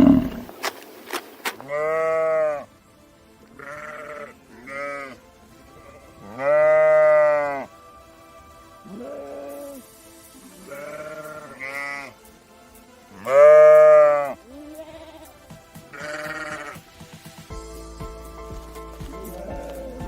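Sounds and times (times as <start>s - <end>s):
farm animal bleating: 0.0s - 0.5s, 1.6s - 2.7s, 3.5s - 7.7s, 8.8s - 9.8s, 10.6s - 12.2s, 13.2s - 16.8s, 19.1s - 20.0s.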